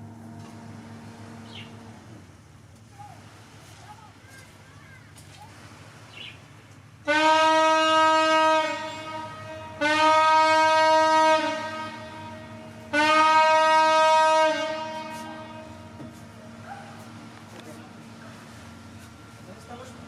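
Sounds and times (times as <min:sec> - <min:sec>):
yacht horn blasts: 0:07.0 - 0:19.4.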